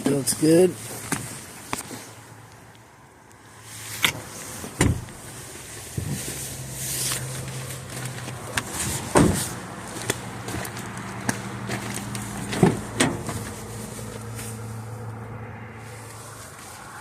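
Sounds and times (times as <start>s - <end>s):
seatbelt clunks and knocks: 4.0s - 5.2s, 8.5s - 9.6s, 12.0s - 13.6s.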